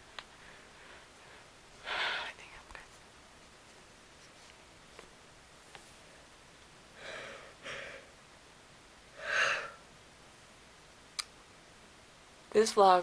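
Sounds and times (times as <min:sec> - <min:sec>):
person breathing close: 0:07.0 - 0:08.1, 0:09.2 - 0:09.8.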